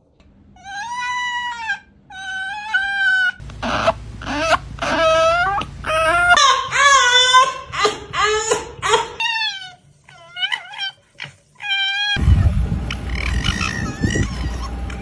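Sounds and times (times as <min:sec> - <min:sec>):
rough noisy rumble: 0:03.4 - 0:06.4
fox whining calls: 0:03.4 - 0:06.9.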